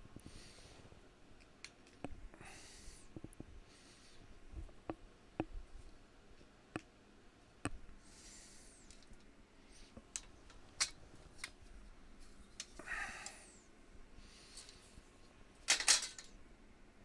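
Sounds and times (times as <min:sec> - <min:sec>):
light clicks and taps on small parts: 0:01.4 - 0:02.2, 0:08.8 - 0:09.3, 0:09.9 - 0:13.4.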